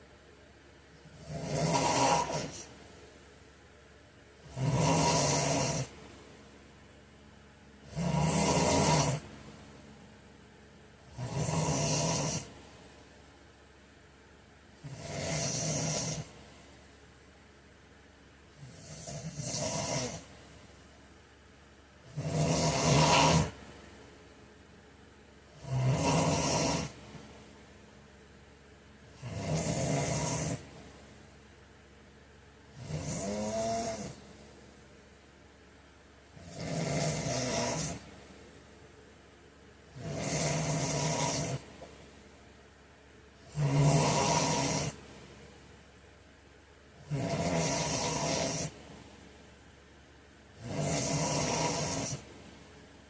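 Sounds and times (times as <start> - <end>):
man snoring: 1.0 - 2.7, 4.4 - 5.9, 7.8 - 9.3, 11.1 - 12.5, 14.8 - 16.4, 18.6 - 20.3, 22.1 - 23.6, 25.5 - 27.0, 29.1 - 30.7, 32.7 - 34.2, 36.4 - 38.1, 39.9 - 41.7, 43.4 - 45.0, 47.0 - 48.8, 50.6 - 52.2.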